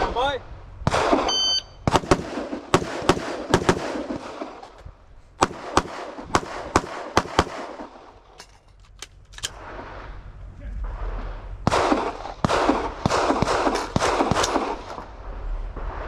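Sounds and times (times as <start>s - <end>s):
pistol shots: 0.9s - 4.6s, 5.4s - 8.0s, 11.7s - 15.0s
rifle shots: 0.9s - 4.7s, 5.4s - 8.2s, 11.0s - 15.1s.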